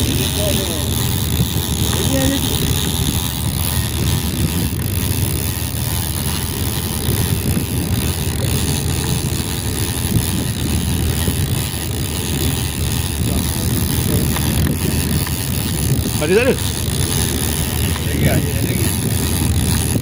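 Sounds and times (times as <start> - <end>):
boat engine rumbling: 0.0 - 20.0.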